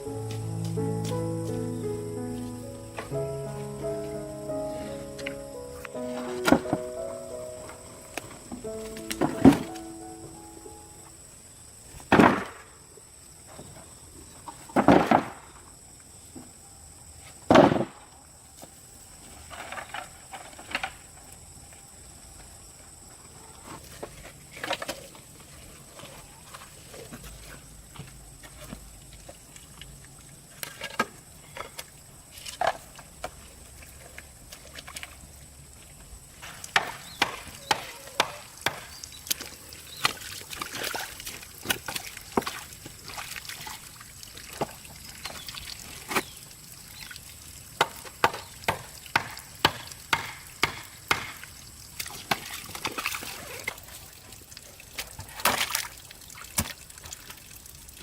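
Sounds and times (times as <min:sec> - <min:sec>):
faint steady hiss: 0:00.0 - 0:58.0
sharp chopping knocks: 0:48.2 - 0:51.4.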